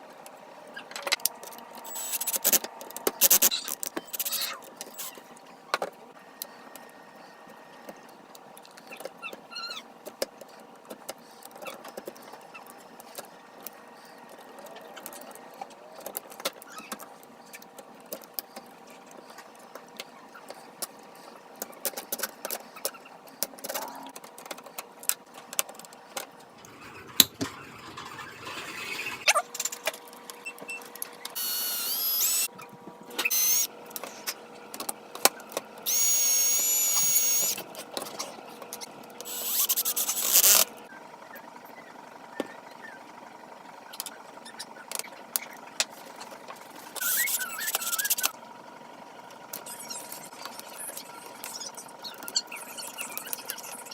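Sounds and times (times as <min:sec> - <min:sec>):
electric drill whine: 0:01.8 - 0:02.6, 0:31.4 - 0:32.5, 0:33.2 - 0:33.7, 0:35.9 - 0:37.6, 0:39.2 - 0:40.6.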